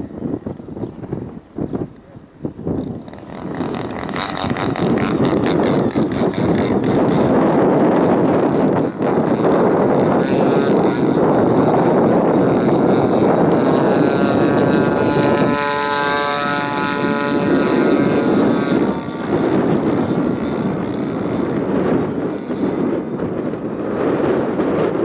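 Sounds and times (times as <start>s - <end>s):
model plane engine buzzing: 0.0s - 25.0s
wind on microphone: 0.0s - 25.0s.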